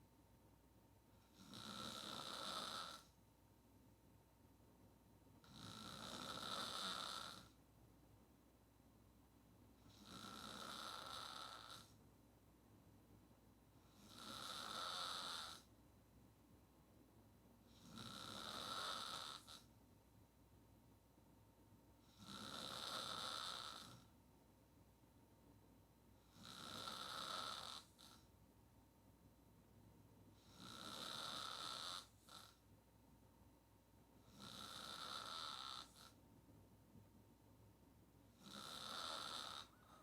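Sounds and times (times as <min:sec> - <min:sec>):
woman snoring: 0:01.2 - 0:03.1, 0:05.4 - 0:07.6, 0:09.8 - 0:12.0, 0:13.8 - 0:15.7, 0:17.7 - 0:19.7, 0:22.0 - 0:24.1, 0:26.2 - 0:28.3, 0:30.4 - 0:32.6, 0:34.2 - 0:36.2, 0:38.3 - 0:40.0.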